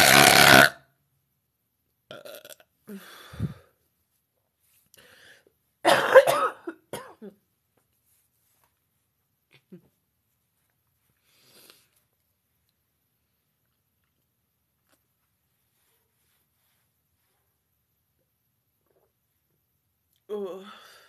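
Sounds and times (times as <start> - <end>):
woman belching: 0.0 - 0.8, 2.1 - 2.7.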